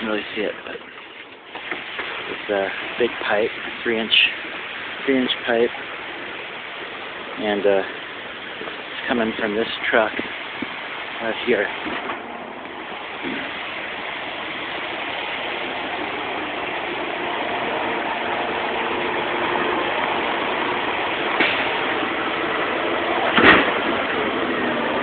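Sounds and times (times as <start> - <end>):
truck engine running: 0.0 - 25.0
sharp knocks: 21.4 - 21.9, 23.3 - 24.0.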